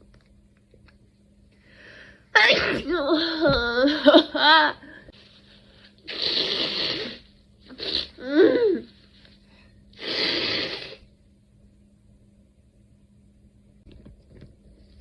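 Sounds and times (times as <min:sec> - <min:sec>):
person sneezing: 0:02.4 - 0:02.9, 0:06.1 - 0:08.9.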